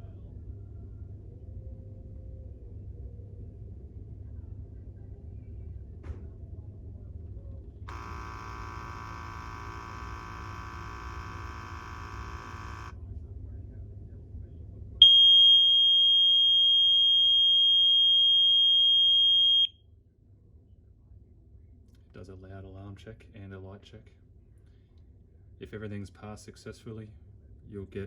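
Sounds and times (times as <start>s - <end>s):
buzz of steady tones: 7.9s - 12.9s
high-pitched alarm beep: 7.9s - 12.9s, 15.0s - 19.7s
low hum: 7.9s - 12.9s.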